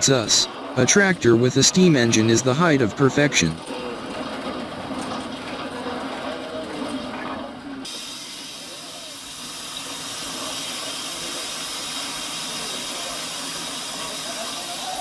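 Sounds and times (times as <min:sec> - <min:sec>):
steam hissing: 0:07.9 - 0:15.0.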